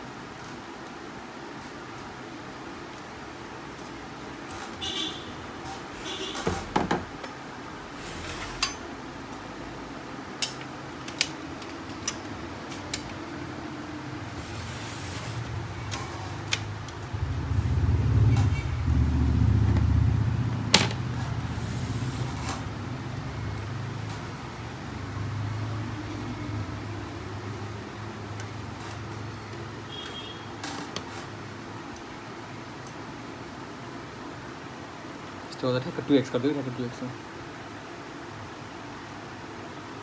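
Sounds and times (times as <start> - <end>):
printer parts clicking and tapping: 10.4 - 13.4
low rumble: 17.0 - 21.4.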